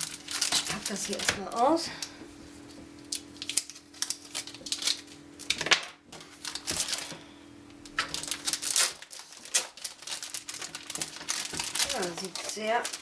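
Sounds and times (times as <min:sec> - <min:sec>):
faint steady hum: 0:00.0 - 0:13.0
plastic packaging crinkling: 0:00.0 - 0:13.0.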